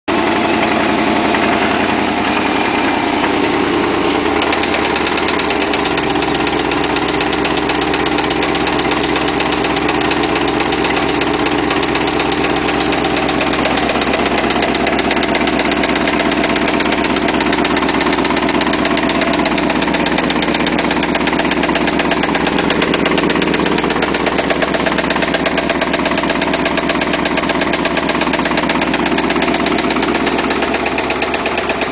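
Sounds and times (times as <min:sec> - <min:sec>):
car engine idling with knocking: 0:00.0 - 0:31.9.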